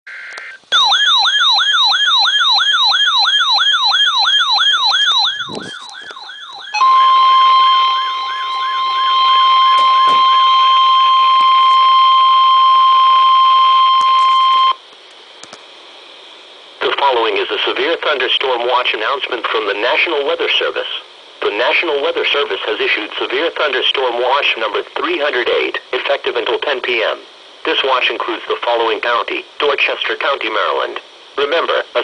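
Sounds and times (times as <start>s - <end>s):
electronic alert siren warbling: 0.7s - 14.8s
steady alert tone: 0.7s - 14.8s
faint radio hiss: 14.0s - 32.0s.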